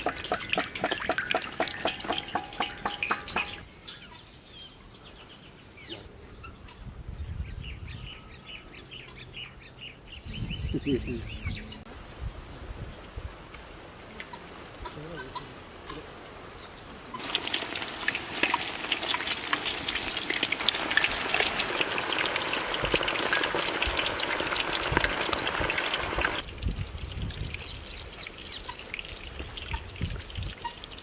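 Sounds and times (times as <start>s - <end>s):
food deep-frying in oil: 0.0s - 3.6s, 17.2s - 31.0s.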